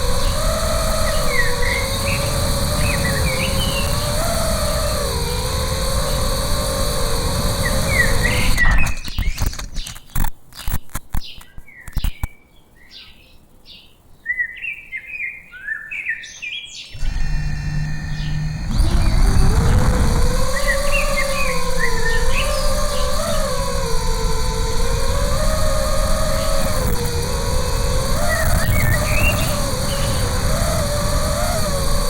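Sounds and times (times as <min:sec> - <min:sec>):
steady hum: 0:00.0 - 0:09.0, 0:17.0 - 0:32.0
drone motors whining: 0:00.0 - 0:09.7, 0:17.0 - 0:32.0
small birds chirping: 0:00.0 - 0:32.0.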